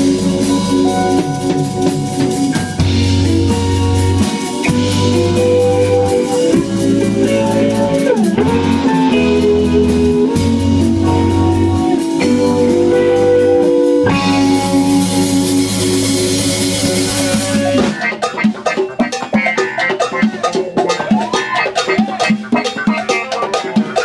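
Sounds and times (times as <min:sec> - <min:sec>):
bass line: 0:00.0 - 0:18.9
drum kit: 0:00.0 - 0:24.0
guitar lines: 0:00.0 - 0:24.0.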